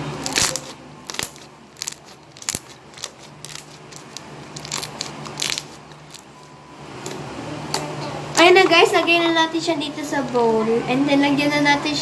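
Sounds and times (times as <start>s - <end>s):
slime crackling and popping: 0.0s - 6.5s.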